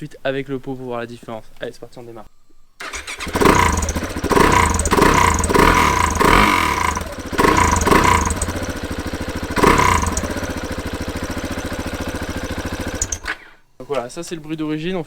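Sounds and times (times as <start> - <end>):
motorcycle engine revving and idling: 2.8 - 13.6.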